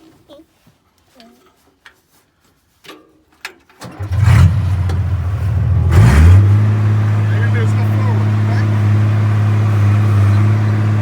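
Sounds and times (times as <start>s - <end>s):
diesel engine starting and running: 3.8s - 11.0s.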